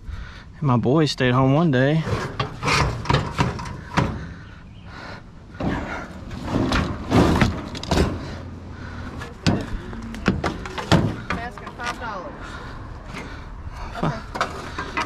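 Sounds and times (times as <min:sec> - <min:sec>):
hard objects knocking and clunking: 0:02.1 - 0:04.5, 0:05.5 - 0:12.1, 0:14.2 - 0:15.0.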